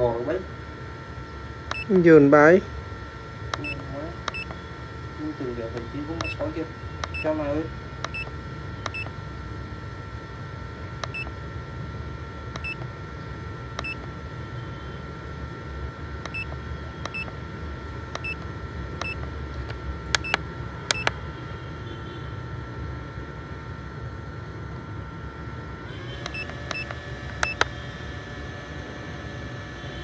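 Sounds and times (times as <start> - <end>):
steady low hum: 0.0 - 30.0
short electronic beeps: 1.7 - 1.9, 3.6 - 4.6, 8.1 - 9.1, 12.6 - 12.8, 26.2 - 27.8.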